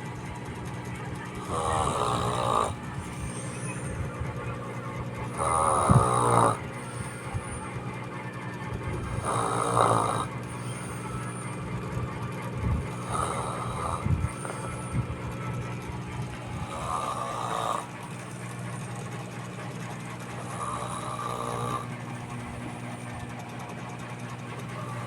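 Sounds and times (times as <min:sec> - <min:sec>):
steady low hum: 0:00.0 - 0:25.0
child snoring: 0:01.4 - 0:04.1, 0:05.2 - 0:07.8, 0:09.0 - 0:11.6, 0:12.8 - 0:15.1, 0:16.4 - 0:18.2, 0:20.3 - 0:22.0.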